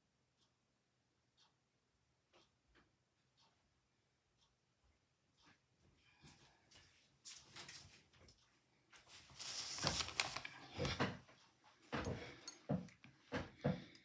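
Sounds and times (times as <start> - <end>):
rustling handling noise: 9.0 - 13.0.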